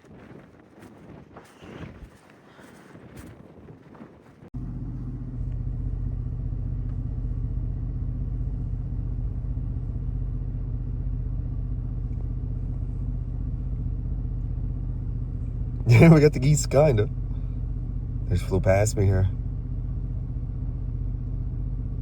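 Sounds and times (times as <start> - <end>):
vehicle engine idling: 4.6 - 22.0.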